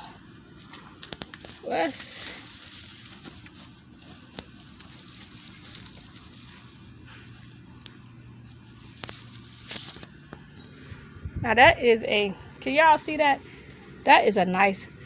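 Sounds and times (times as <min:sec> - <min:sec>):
hands digging in soil: 0:00.0 - 0:10.5.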